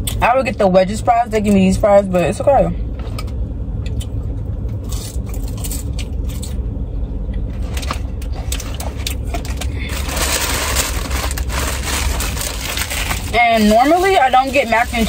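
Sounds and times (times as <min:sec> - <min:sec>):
car interior rumble: 0:00.0 - 0:15.0
food containers scraping and clicking: 0:07.4 - 0:15.0
loud rustling: 0:09.4 - 0:15.0.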